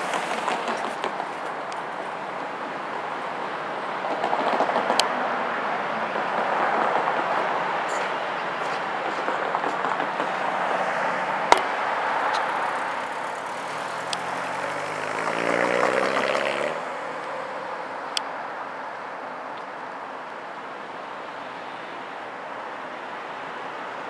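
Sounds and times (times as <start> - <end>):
freight train rumbling: 4.0 - 10.6
engine revving up: 13.4 - 17.2.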